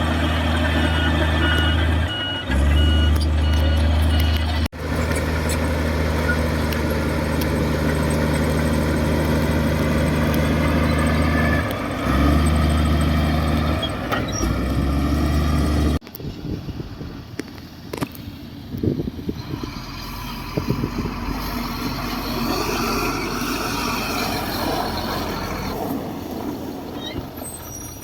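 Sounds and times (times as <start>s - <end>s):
diesel engine low drone: 0.0s - 28.0s.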